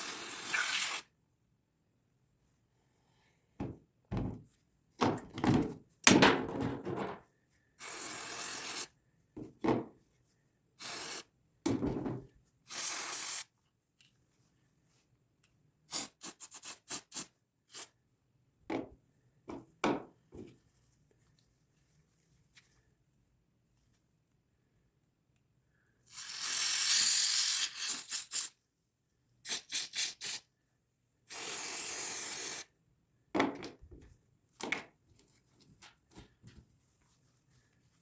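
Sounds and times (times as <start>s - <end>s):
short hissing bursts: 7.8s - 9.0s, 10.8s - 11.3s, 12.7s - 13.5s, 26.0s - 28.6s, 31.3s - 32.7s.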